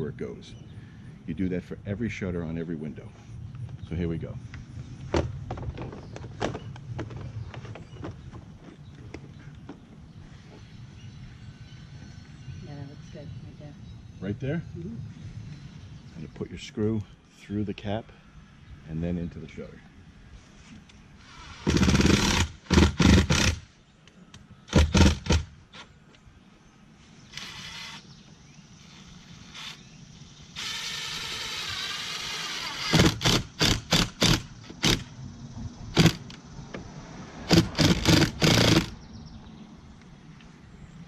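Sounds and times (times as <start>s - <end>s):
power drill driving screws: 21.2s - 23.6s, 27.3s - 28.0s, 28.8s - 29.8s, 30.6s - 35.0s, 36.0s - 36.3s, 37.5s - 38.9s.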